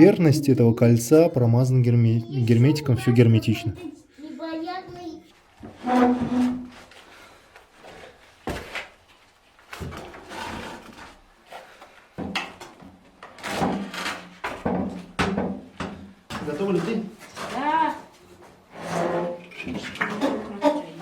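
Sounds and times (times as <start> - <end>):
knocks and thuds of handling: 12.2 - 16.6.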